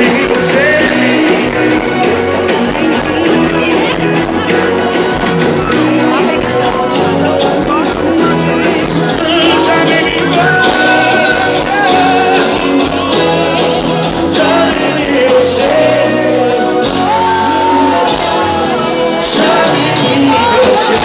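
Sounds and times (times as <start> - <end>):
loud music with singing: 0.0 - 21.0
people shouting: 16.8 - 21.0.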